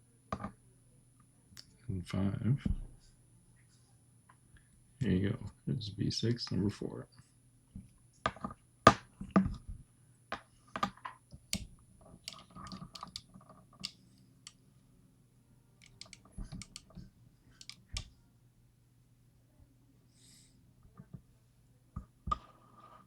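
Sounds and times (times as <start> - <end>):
small clicks and taps of lock parts: 10.8 - 14.6, 15.8 - 17.0, 17.6 - 18.1.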